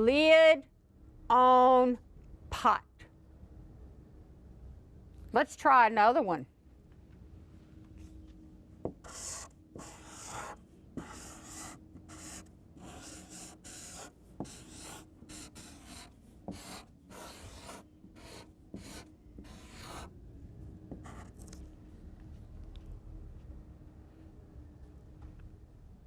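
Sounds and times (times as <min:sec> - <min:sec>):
writing strokes on a board: 0:08.9 - 0:20.1, 0:20.9 - 0:21.4.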